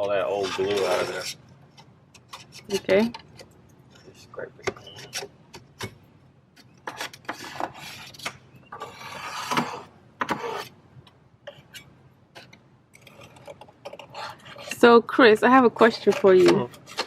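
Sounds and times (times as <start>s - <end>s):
scraper scraping glue off wood: 8.8s - 10.8s.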